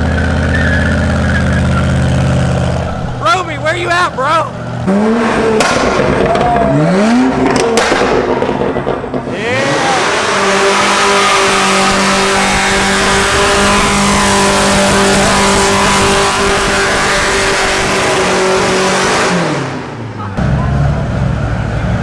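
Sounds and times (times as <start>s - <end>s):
tyres spinning and squealing: 0.0s - 7.8s, 8.8s - 18.1s
car engine revving: 0.0s - 22.0s.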